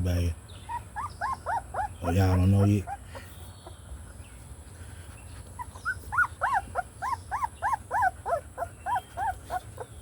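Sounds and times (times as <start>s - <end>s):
puppy whining: 0.6s - 3.8s, 5.4s - 10.0s.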